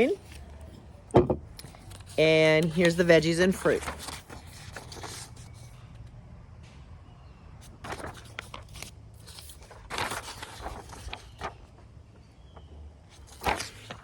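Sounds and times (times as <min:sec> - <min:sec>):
paper rustling and crinkling: 0:01.6 - 0:05.7, 0:07.6 - 0:14.0.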